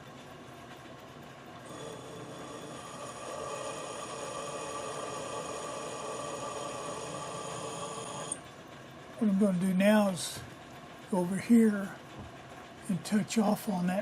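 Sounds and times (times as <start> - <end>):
metal lathe whine: 1.6 - 10.4.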